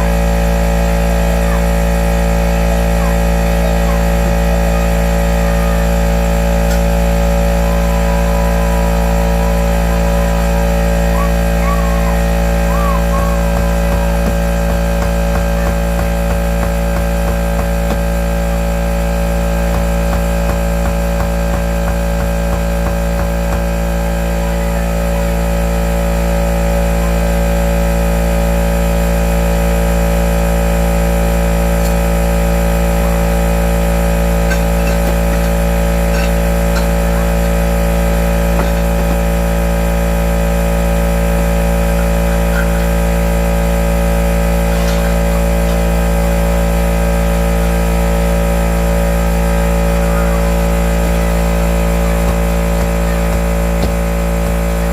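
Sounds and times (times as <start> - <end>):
motor humming: 0.0 - 54.9.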